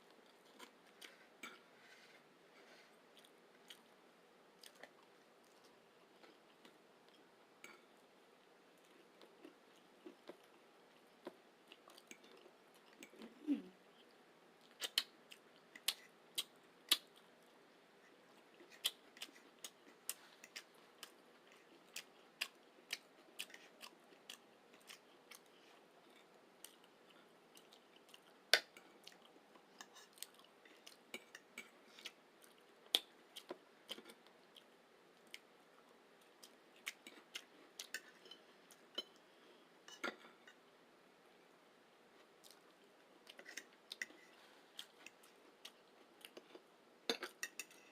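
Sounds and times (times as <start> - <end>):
chewing: 8.8 - 39.2, 42.2 - 47.9.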